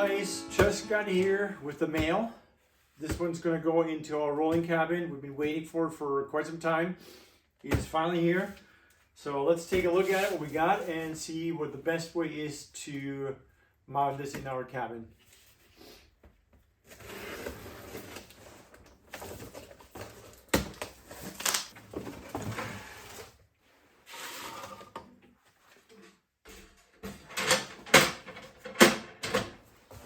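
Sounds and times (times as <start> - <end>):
cardboard and packing rustling: 16.8 - 24.6
parts knocking and clattering: 26.4 - 29.7.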